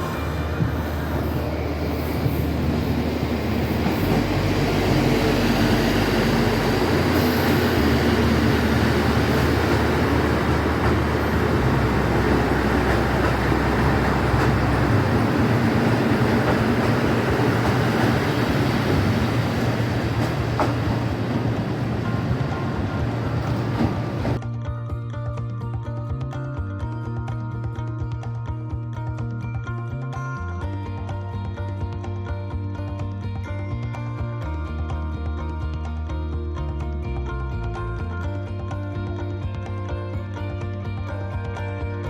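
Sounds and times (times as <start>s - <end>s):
train wheels rumbling on rails: 0.0s - 24.4s.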